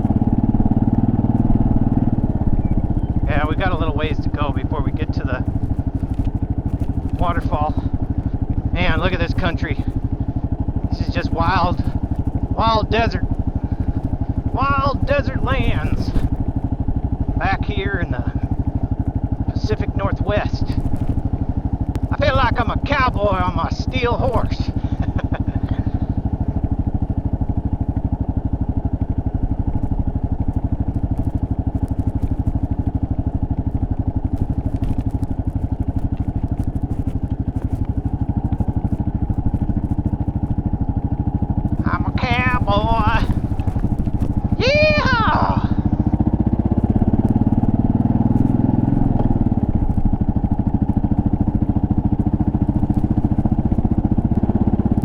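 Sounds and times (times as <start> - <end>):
motorcycle engine running: 0.0 - 55.0
faint ticks: 4.3 - 14.6, 20.6 - 22.6, 29.6 - 41.9, 42.5 - 44.7, 45.9 - 55.0.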